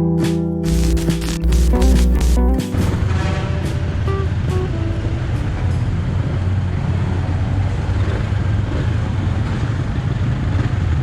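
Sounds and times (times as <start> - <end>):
road noise: 2.7 - 11.0.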